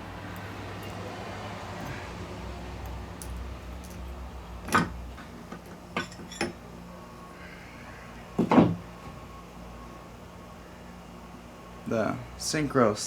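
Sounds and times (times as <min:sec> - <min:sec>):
metal parts clinking and knocking: 0:03.2 - 0:06.6.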